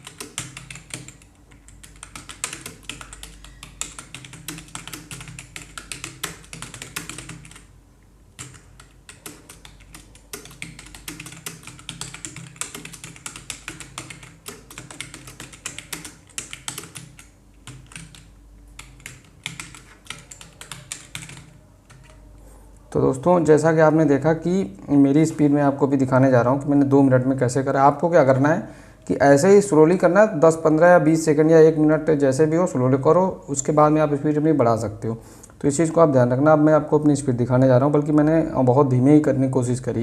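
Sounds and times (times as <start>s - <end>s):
fast keyboard typing: 0.0s - 7.7s, 8.3s - 22.2s.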